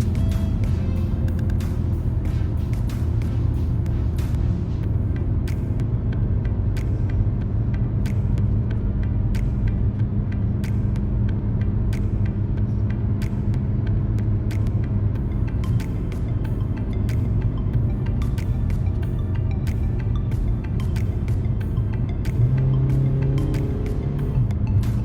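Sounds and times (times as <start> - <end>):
background music with steady beat: 0.0 - 25.0
heavy low rumble: 0.0 - 25.0.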